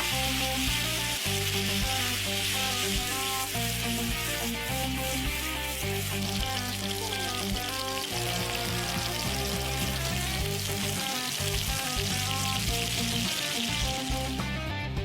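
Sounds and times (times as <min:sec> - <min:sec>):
food sizzling in a pan: 0:00.0 - 0:14.6
background music: 0:00.0 - 0:15.0.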